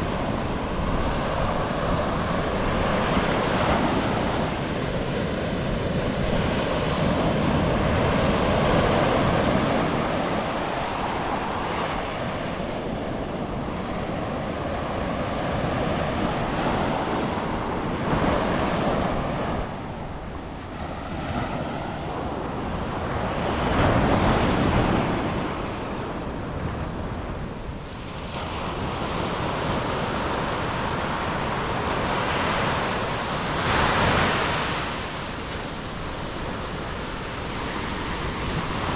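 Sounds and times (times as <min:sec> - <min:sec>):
waves breaking on beach: 0:00.0 - 0:38.9
wind buffeting microphone: 0:00.0 - 0:38.9.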